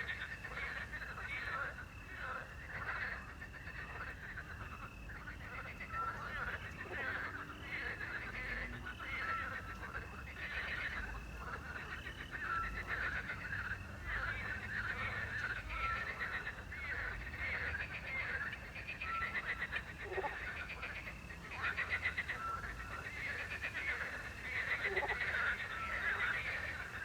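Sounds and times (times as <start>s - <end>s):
frogs croaking: 0.0s - 27.0s.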